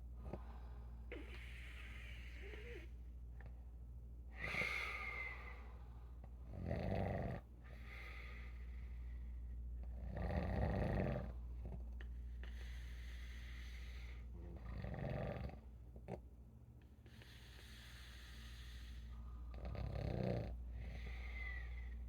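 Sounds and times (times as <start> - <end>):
rough rattling snores: 6.5 - 7.4, 10.0 - 11.4, 14.5 - 15.6, 19.5 - 21.3.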